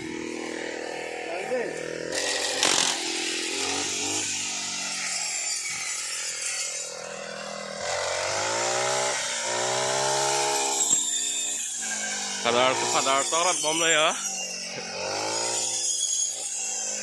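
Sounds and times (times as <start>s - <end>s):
brush cutter engine running: 0.0s - 17.0s.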